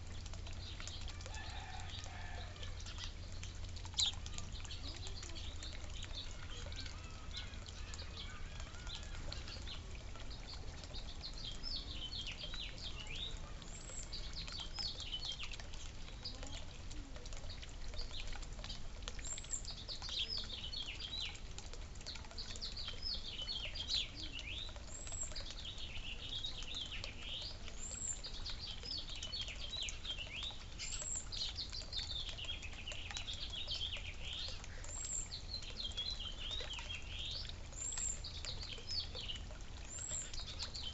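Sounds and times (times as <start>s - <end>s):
songbirds chirping: 0.0s - 40.9s.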